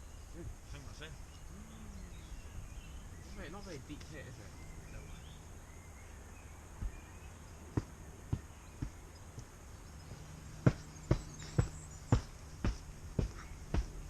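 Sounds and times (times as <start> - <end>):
sharp knocks on hard surface: 10.6 - 14.0.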